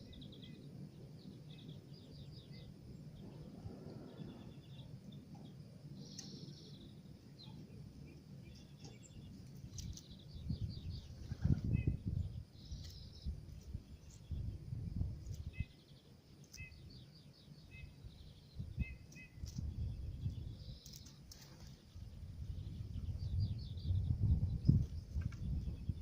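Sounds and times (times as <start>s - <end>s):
birds chirping and trilling: 0.0s - 26.0s
low uneven rumbling noise: 0.1s - 15.9s.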